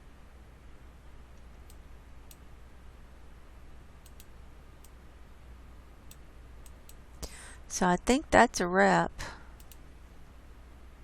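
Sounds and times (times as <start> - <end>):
low steady hum: 0.0 - 11.0
computer mouse clicks: 1.4 - 2.5, 4.0 - 5.0, 6.1 - 7.0, 9.6 - 9.9.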